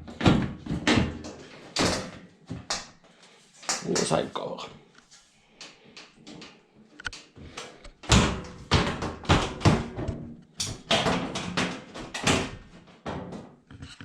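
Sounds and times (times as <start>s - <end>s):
panel knocking and clattering: 8.1s - 13.6s.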